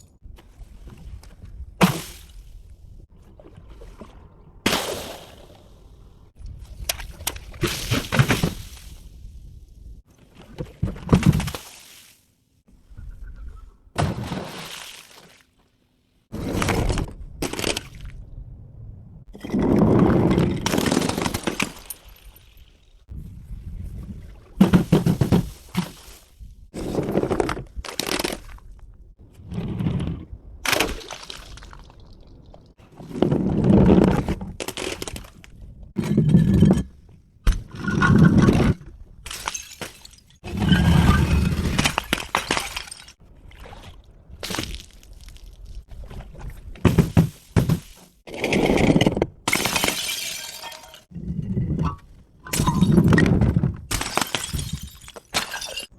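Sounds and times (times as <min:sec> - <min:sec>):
glass bottles smashing: 0:39.3 - 0:43.2, 0:49.5 - 0:51.1, 0:52.5 - 0:53.2, 0:53.9 - 0:55.9.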